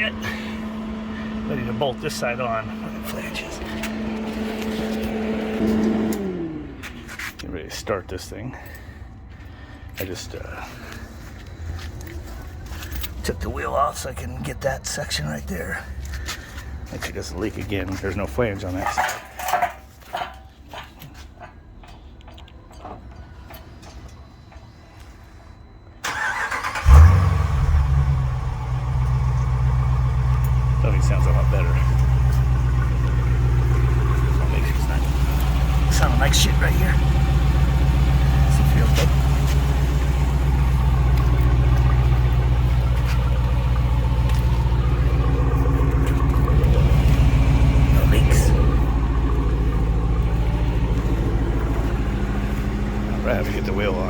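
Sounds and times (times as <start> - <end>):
engine starting and idling: 0.0 - 7.4, 26.0 - 54.0
starter motor cranking: 26.0 - 29.6, 30.2 - 54.0.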